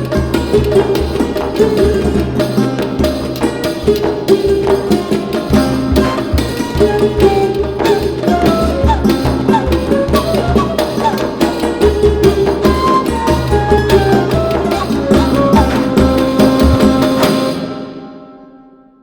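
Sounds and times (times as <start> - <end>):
hand drum beat: 0.0 - 17.7
winding melody: 12.5 - 17.5.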